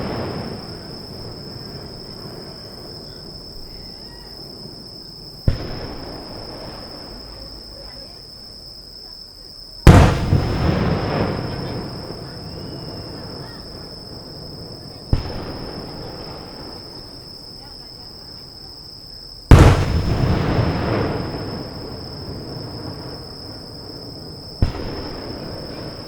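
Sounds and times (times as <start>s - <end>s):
firework crackling: 0.0s - 8.6s, 9.8s - 18.6s, 19.4s - 26.0s
firework shells bursting: 9.8s - 13.9s, 19.5s - 26.0s
echoing rumble: 9.9s - 17.0s, 19.5s - 26.0s.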